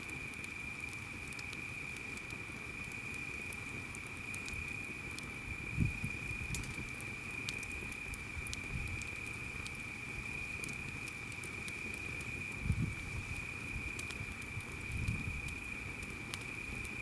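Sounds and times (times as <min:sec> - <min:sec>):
campfire crackling: 0:00.0 - 0:17.0
low rumble of flames: 0:00.0 - 0:17.0.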